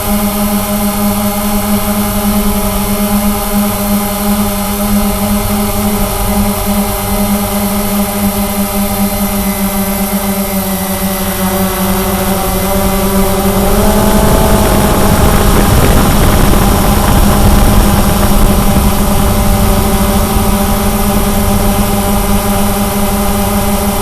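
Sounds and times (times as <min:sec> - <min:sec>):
quadcopter motors humming: 0:00.0 - 0:24.0
rushing noise: 0:12.3 - 0:24.0.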